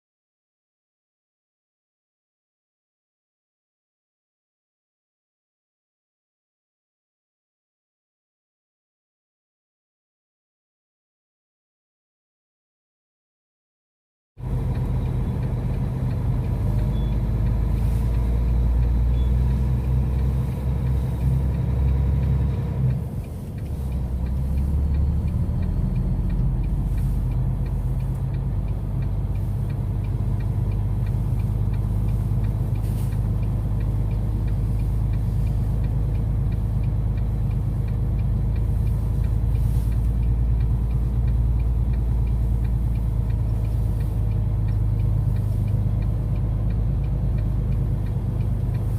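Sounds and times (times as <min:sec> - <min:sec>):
truck engine rumbling: 0:14.4 - 0:48.9.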